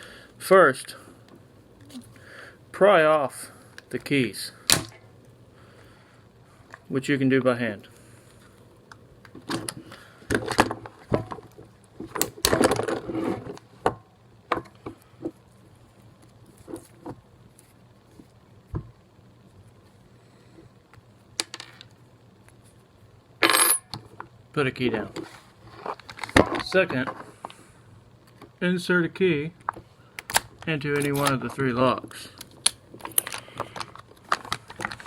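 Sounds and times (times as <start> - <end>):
plastic packaging crackling: 33.2 - 35.0.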